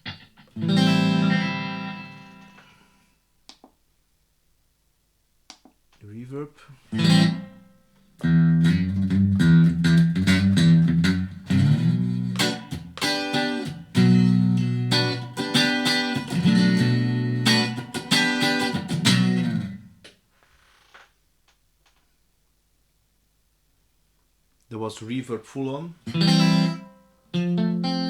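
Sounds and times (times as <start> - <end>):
electric guitar with reverb: 0.0 - 3.0, 6.9 - 19.9, 26.0 - 28.0.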